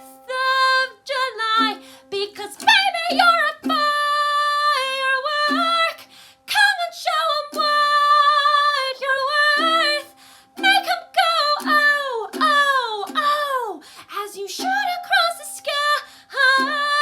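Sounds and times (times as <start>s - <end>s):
woman singing long notes: 0.0s - 17.0s
singer breathing: 1.8s - 2.1s, 6.0s - 6.5s, 10.1s - 10.6s, 13.8s - 14.1s, 16.0s - 16.4s.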